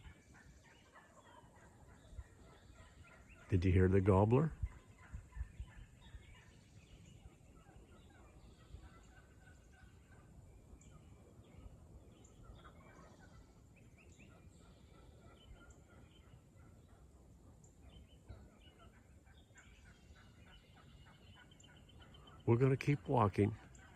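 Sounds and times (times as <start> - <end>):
birds chirping: 0.0 - 23.9
distant wild turkeys calling: 0.0 - 23.9.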